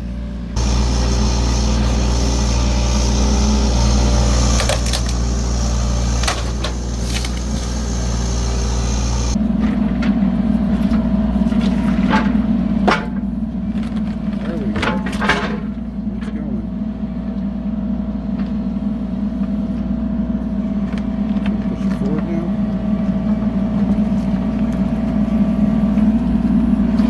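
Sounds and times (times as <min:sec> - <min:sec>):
diesel engine running: 0:00.0 - 0:27.0.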